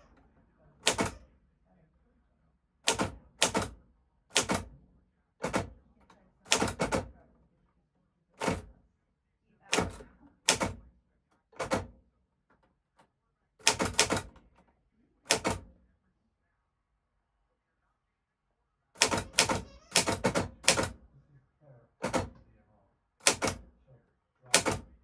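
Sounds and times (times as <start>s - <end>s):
typewriter key strikes: 0.8s - 1.2s, 2.9s - 3.7s, 4.3s - 4.7s, 6.5s - 7.1s, 9.7s - 10.8s, 11.6s - 11.9s, 13.6s - 14.4s, 15.3s - 15.6s, 19.0s - 21.0s, 22.0s - 22.3s, 23.2s - 23.6s, 24.5s - 24.9s.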